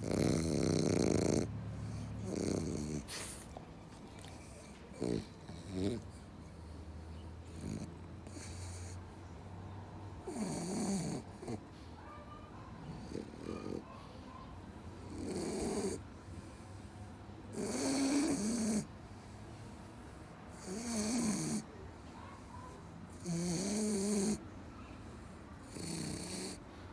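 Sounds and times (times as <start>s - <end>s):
pet snoring: 0.0s - 6.3s, 7.4s - 9.0s, 10.2s - 11.6s, 15.0s - 16.1s, 17.5s - 18.9s, 20.5s - 21.7s, 23.1s - 24.4s, 25.6s - 26.7s.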